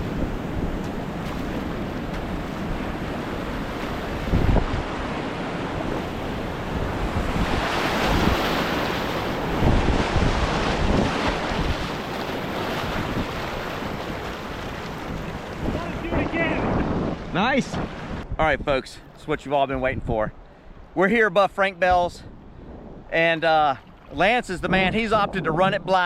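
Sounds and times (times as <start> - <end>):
wind buffeting microphone: 0.0 - 18.9, 21.9 - 23.2, 23.8 - 26.0
rushing river whitewater: 0.9 - 18.2.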